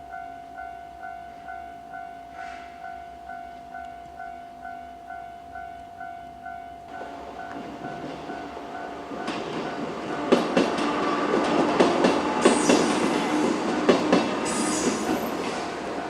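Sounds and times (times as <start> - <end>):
electric train running: 6.9 - 16.0
wheels clacking over rail joints: 6.9 - 16.0.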